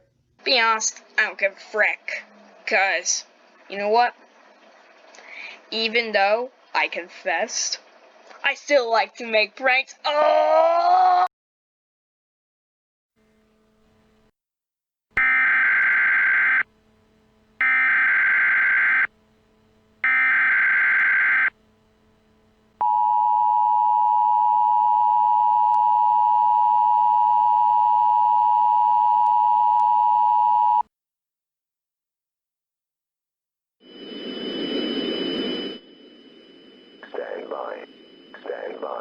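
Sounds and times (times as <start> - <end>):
buzzy digital data bursts: 15.2 - 16.6, 17.6 - 19.1, 20.0 - 21.5
two-tone attention signal: 15.2 - 16.7, 17.6 - 19.1, 20.0 - 21.5.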